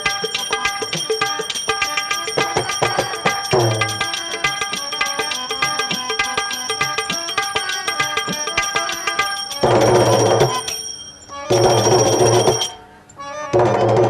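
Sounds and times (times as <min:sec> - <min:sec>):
ringing tremolo notes: 0:00.0 - 0:14.0.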